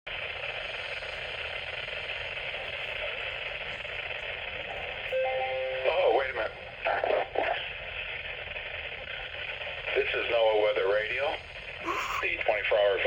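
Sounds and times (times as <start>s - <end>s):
weather radio buzzing hiss: 0.2s - 13.0s
steady alert tones: 5.2s - 6.0s.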